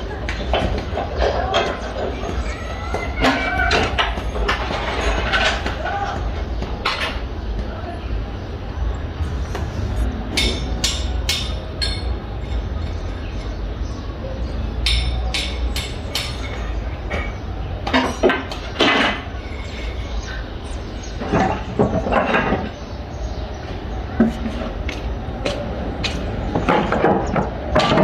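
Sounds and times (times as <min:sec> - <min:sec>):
steady low rumble: 0:06.2 - 0:13.8.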